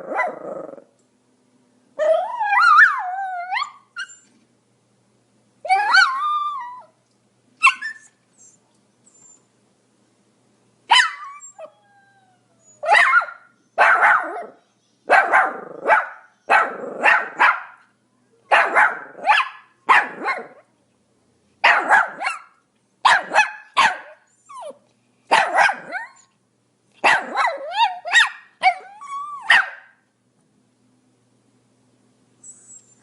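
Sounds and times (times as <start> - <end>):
small dog barking: 0.0 - 0.5, 10.9 - 11.4, 12.8 - 17.9, 18.5 - 20.7, 21.6 - 26.2, 27.0 - 30.0.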